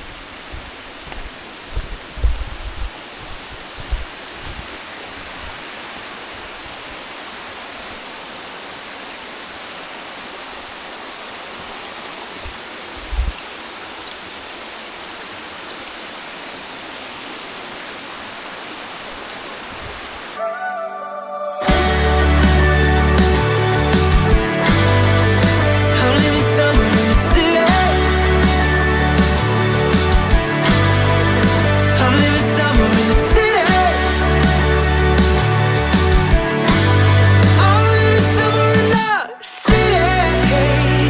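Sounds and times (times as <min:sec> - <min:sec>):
short low bumps: 0:00.0 - 0:05.8, 0:12.4 - 0:13.4
stream and waterfall rushing: 0:00.0 - 0:24.6, 0:31.6 - 0:36.7.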